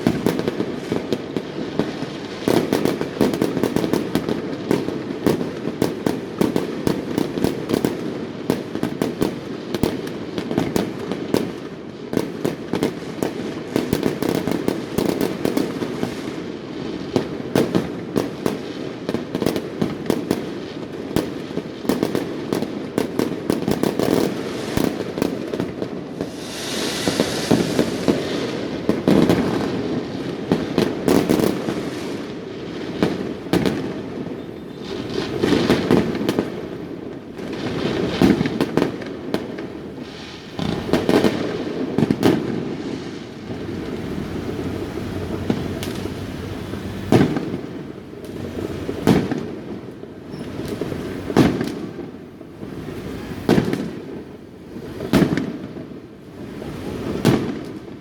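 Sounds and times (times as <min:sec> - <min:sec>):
fireworks cracking and banging: 0:00.0 - 0:58.0
fireworks hissing: 0:23.8 - 0:32.2.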